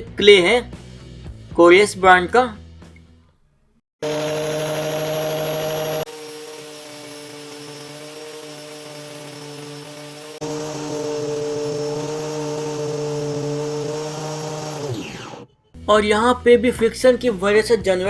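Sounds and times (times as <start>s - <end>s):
angle grinder whining: 4.0s - 15.6s.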